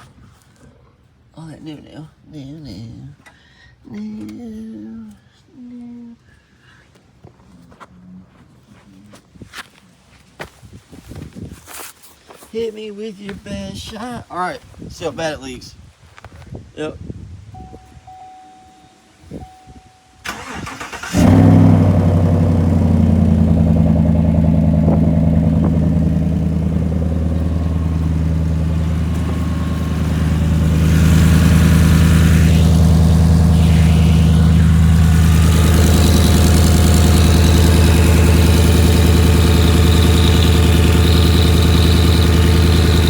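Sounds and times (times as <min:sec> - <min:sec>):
pickup engine cranking and idling: 0:20.2 - 0:43.0.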